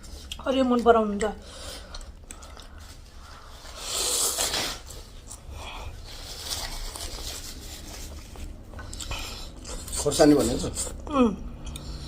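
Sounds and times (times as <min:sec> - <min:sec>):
faint eating noises: 0:00.0 - 0:12.0
loud sucking through mouth: 0:03.7 - 0:05.0.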